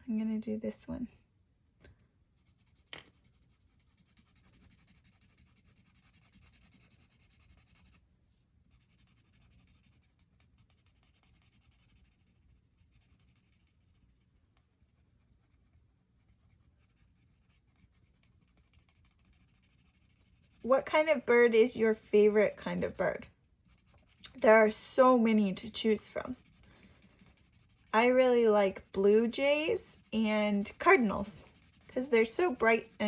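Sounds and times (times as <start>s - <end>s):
marker scratching on paper: 2.4s - 8.0s, 8.7s - 33.0s.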